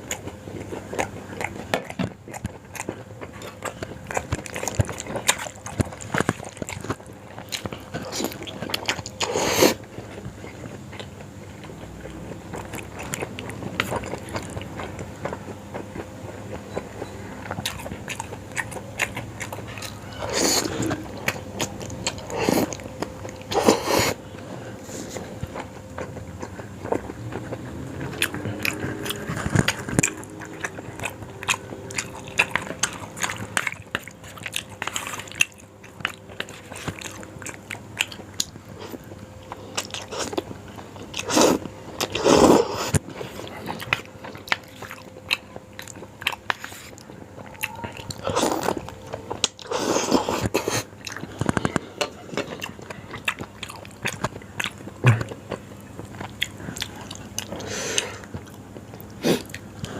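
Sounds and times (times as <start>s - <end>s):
person biting and chewing food: 0.0s - 11.8s, 24.9s - 59.9s.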